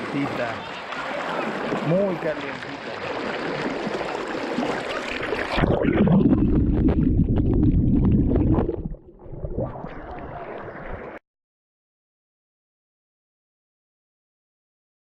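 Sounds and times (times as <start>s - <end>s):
river water sloshing and gurgling: 0.0s - 6.9s.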